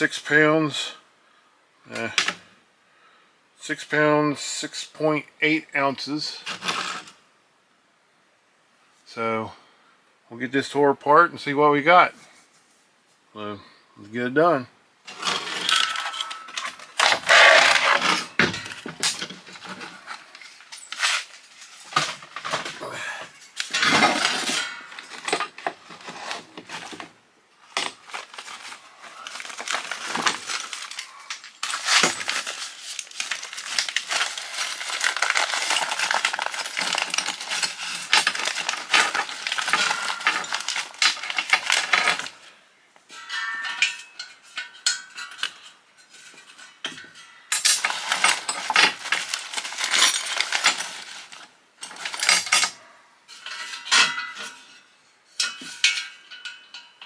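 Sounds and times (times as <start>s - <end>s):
rapid metal clatter and scraping: 15.1s - 22.8s, 23.5s - 27.1s, 27.7s - 42.4s, 47.5s - 52.7s
metal clinking: 15.1s - 27.0s, 27.7s - 42.3s, 43.1s - 52.8s.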